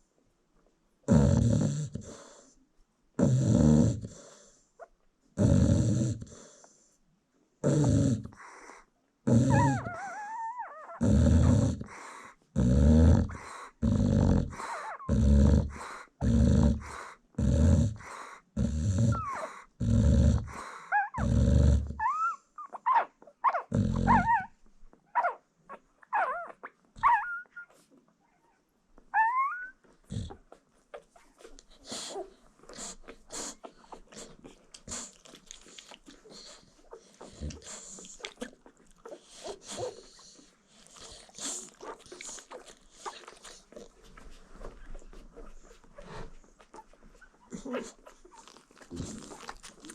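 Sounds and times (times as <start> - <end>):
dog snoring: 1.1 - 2.4, 3.2 - 4.5, 5.4 - 6.6, 7.6 - 22.3, 23.5 - 24.5, 30.1 - 30.4, 31.8 - 43.9, 47.5 - 49.9
puppies squeaking and whimpering: 9.5 - 11.1, 19.1 - 19.5, 22.0 - 28.6, 29.2 - 49.9.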